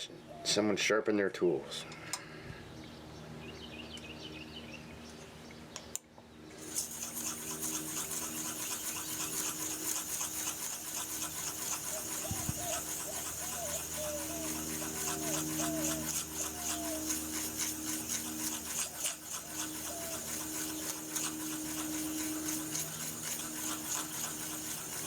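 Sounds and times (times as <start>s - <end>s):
tool rubbing on sharpening stone: 6.6s - 25.0s.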